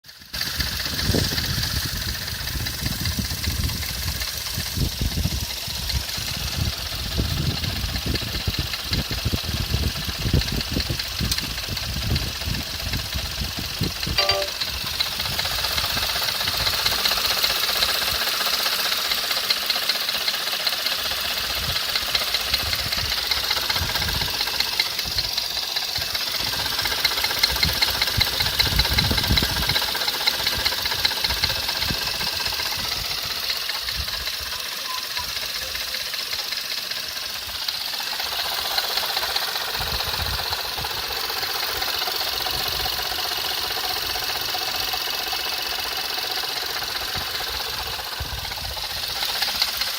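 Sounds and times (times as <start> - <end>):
car engine knocking: 0.0 - 49.9.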